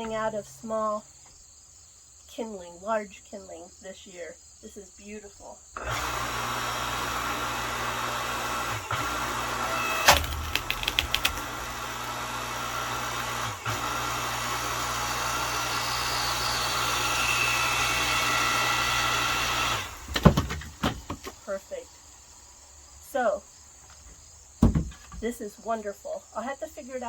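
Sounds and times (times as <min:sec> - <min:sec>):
log splitter motor running: 0:05.8 - 0:21.4
wood splitting cracks: 0:09.0 - 0:14.1, 0:19.4 - 0:21.4, 0:24.6 - 0:25.2.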